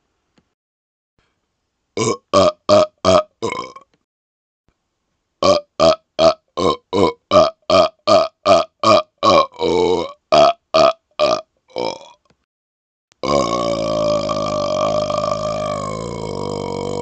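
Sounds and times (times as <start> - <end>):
man burping: 2.0 - 3.9, 5.4 - 12.2, 13.2 - 17.0.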